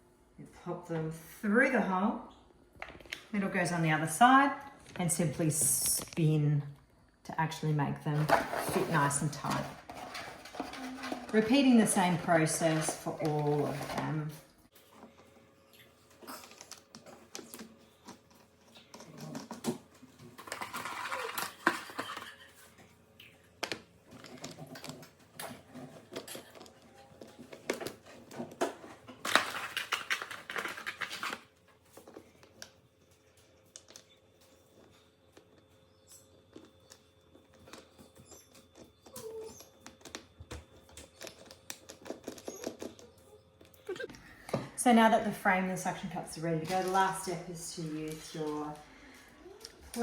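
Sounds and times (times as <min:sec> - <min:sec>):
rubbing and scraping: 0:08.1 - 0:14.3.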